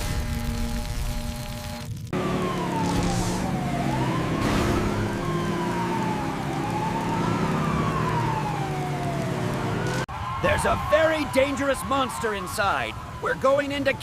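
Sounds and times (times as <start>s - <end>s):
police siren wailing: 2.1s - 14.0s.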